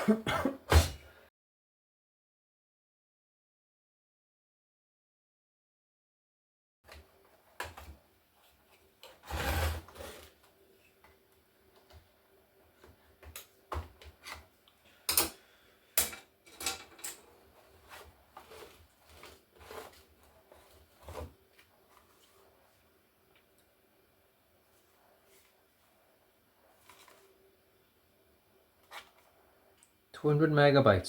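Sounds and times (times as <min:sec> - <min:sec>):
rubbing scrape: 0:09.2 - 0:10.3, 0:17.3 - 0:22.8.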